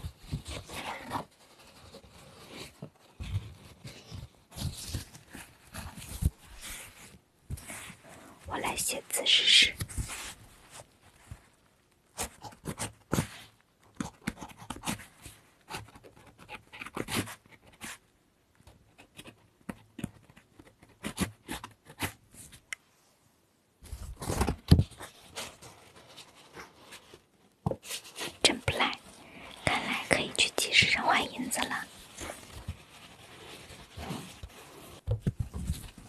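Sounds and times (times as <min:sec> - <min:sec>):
paper rustling: 0:00.0 - 0:08.1, 0:23.8 - 0:36.0.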